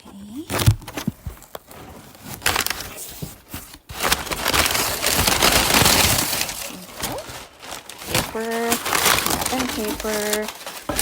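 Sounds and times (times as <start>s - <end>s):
wrapping paper crinkling: 0.2s - 11.0s.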